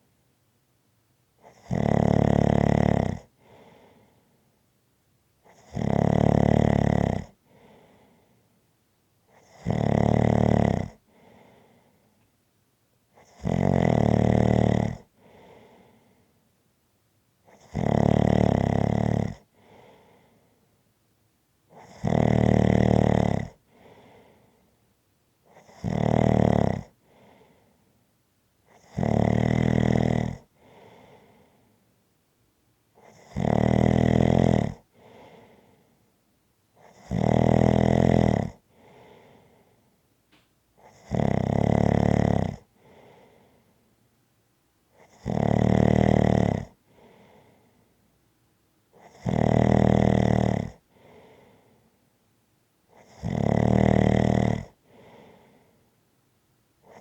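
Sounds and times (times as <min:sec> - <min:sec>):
loud snoring: 0:01.4 - 0:03.7, 0:05.5 - 0:07.8, 0:09.3 - 0:11.0, 0:13.2 - 0:15.6, 0:17.5 - 0:20.0, 0:21.7 - 0:24.2, 0:25.5 - 0:27.5, 0:28.7 - 0:31.3, 0:33.0 - 0:35.6, 0:36.8 - 0:39.4, 0:40.8 - 0:43.3, 0:45.0 - 0:47.5, 0:49.0 - 0:51.5, 0:52.9 - 0:55.6
faint breath: 0:03.3 - 0:04.6, 0:07.4 - 0:08.7, 0:11.0 - 0:12.3, 0:15.1 - 0:16.6, 0:19.4 - 0:20.9, 0:23.6 - 0:24.9, 0:26.9 - 0:28.1, 0:30.5 - 0:32.0, 0:34.9 - 0:36.2, 0:38.6 - 0:41.0, 0:42.7 - 0:44.1, 0:46.8 - 0:48.2, 0:50.8 - 0:52.2, 0:54.7 - 0:56.0.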